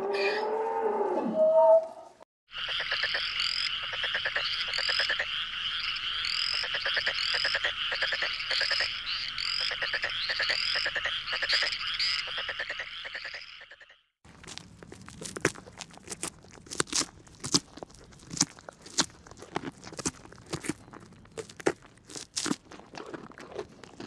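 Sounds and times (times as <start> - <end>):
frogs croaking: 2.5 - 14.1.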